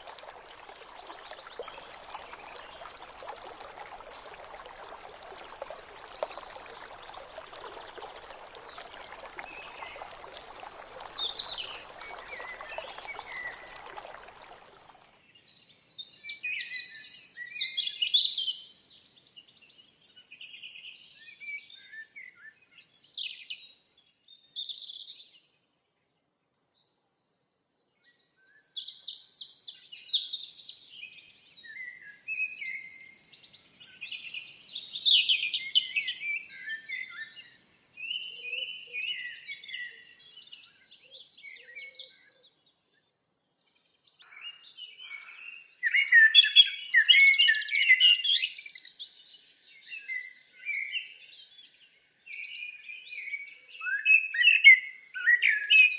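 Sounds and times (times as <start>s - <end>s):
songbirds chirping and trilling: 0.0s - 15.1s.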